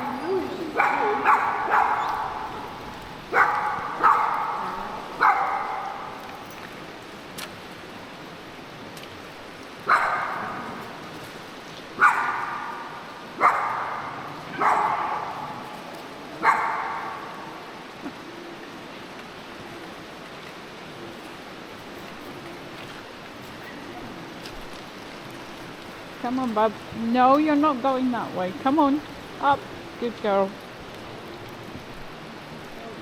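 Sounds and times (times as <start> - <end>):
background rushing noise: 0.0 - 33.0
dog barking with echo: 0.1 - 6.2, 9.9 - 10.7, 12.0 - 15.7, 16.4 - 17.4.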